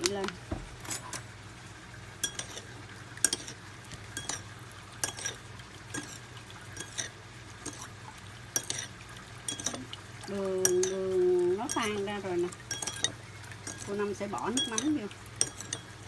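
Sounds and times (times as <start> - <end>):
spoon clinking in a bowl: 2.2 - 2.6, 4.1 - 4.4, 5.0 - 6.2, 6.8 - 7.1, 8.6 - 8.9, 9.5 - 9.9, 10.6 - 11.0, 11.7 - 12.0, 12.7 - 13.9, 14.5 - 16.0.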